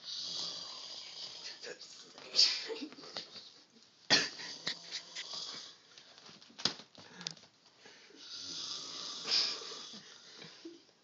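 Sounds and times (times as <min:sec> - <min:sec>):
man snoring heavily: 0:00.0 - 0:01.6, 0:08.2 - 0:10.0.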